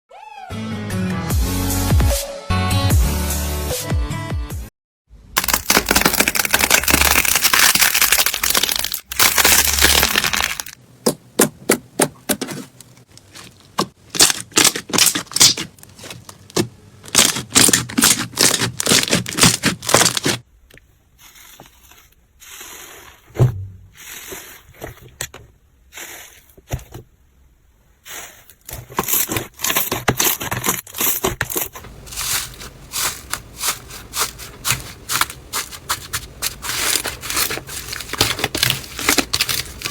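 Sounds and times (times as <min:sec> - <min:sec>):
crunchy slime crackling: 0:05.4 - 0:10.8, 0:12.6 - 0:20.4, 0:29.0 - 0:39.9.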